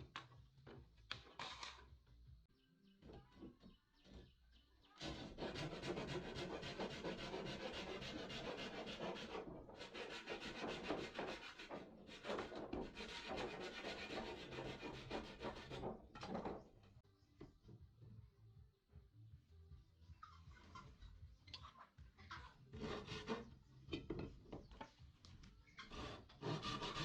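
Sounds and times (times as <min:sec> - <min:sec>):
abrasive scraping on wood: 0:05.0 - 0:16.7.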